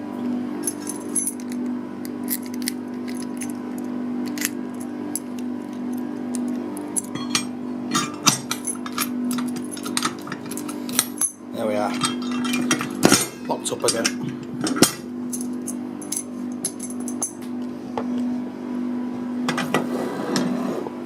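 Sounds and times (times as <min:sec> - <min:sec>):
steady low hum: 0:00.0 - 0:21.0
keys jangling: 0:00.6 - 0:01.6.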